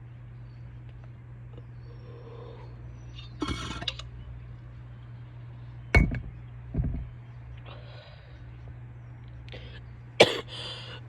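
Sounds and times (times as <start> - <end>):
woman coughing: 10.2 - 10.5.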